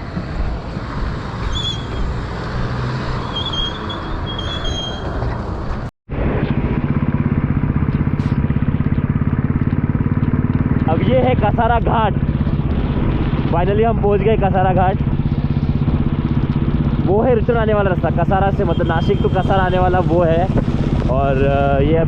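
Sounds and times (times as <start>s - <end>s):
wind and road rumble: 0.0s - 22.0s
motorcycle engine running: 5.7s - 22.0s.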